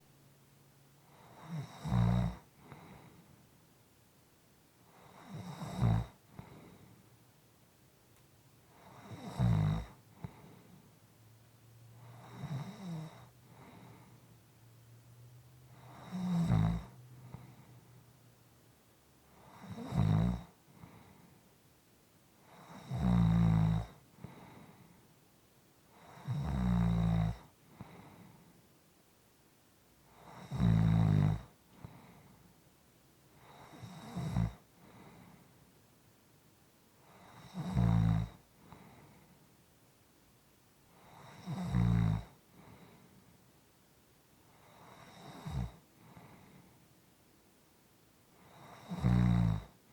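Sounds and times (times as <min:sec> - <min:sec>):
quiet breathing: 0:00.0 - 0:08.0, 0:08.6 - 0:49.9
person snoring softly: 0:01.0 - 0:03.4, 0:04.8 - 0:07.0, 0:08.7 - 0:10.9, 0:11.9 - 0:14.4, 0:15.7 - 0:18.0, 0:19.3 - 0:21.4, 0:22.4 - 0:25.1, 0:25.9 - 0:28.6, 0:30.0 - 0:32.5, 0:33.3 - 0:35.6, 0:37.0 - 0:39.4, 0:40.9 - 0:43.3, 0:44.5 - 0:46.8, 0:48.3 - 0:49.8.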